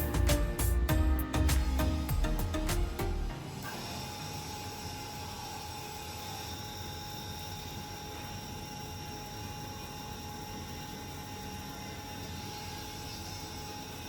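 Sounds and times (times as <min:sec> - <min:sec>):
small motor whirring: 0:03.5 - 0:14.0.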